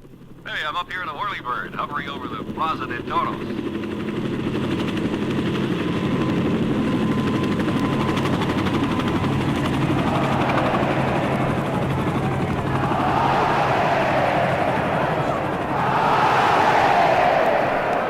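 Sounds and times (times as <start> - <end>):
helicopter rotor beating: 0.0 - 0.4, 1.2 - 18.0
crowd noise: 9.1 - 18.0.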